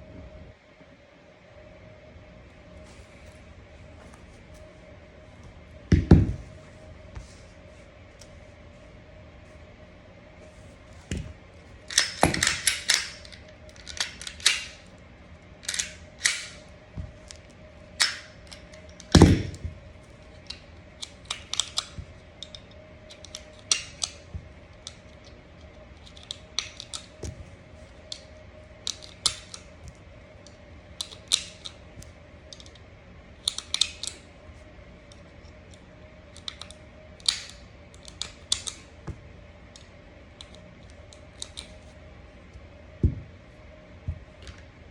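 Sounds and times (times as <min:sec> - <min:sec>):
faint steady hum: 0:00.0 - 0:44.9
metallic clicks and scrapes: 0:15.6 - 0:16.6.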